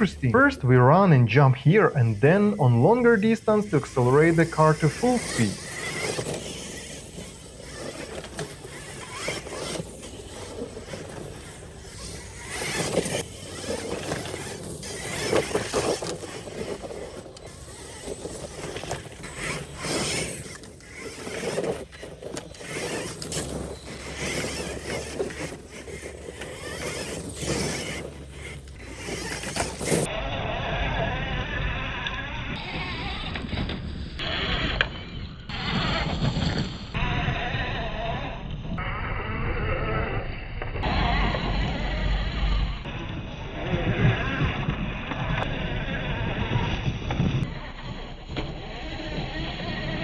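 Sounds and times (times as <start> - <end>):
tyre and ground noise: 0.0 - 50.0
rc truck motor winding up: 1.6 - 50.0.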